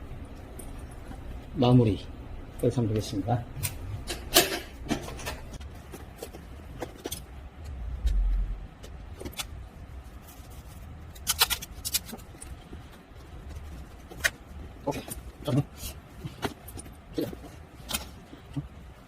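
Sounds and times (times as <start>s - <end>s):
short low rumble: 7.7s - 8.8s.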